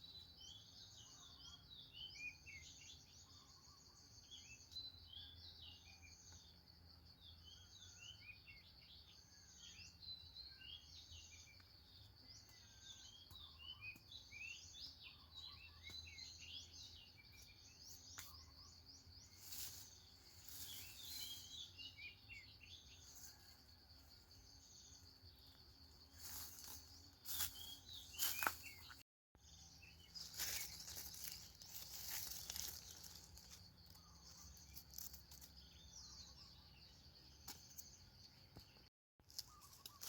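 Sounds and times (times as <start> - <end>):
bird chirps: 0.0 - 40.0
high insect trill: 23.0 - 28.7, 30.2 - 35.9.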